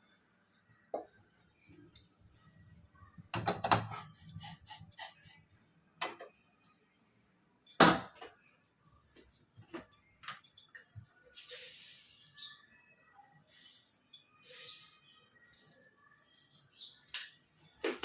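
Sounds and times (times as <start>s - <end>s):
utensils and pots clinking: 9.7s - 10.8s.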